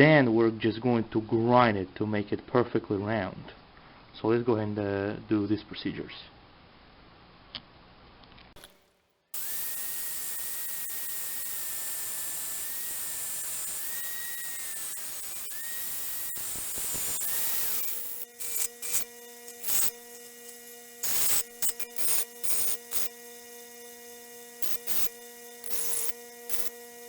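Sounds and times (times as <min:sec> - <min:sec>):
cut-off wheel grinding metal: 0:09.4 - 0:27.0.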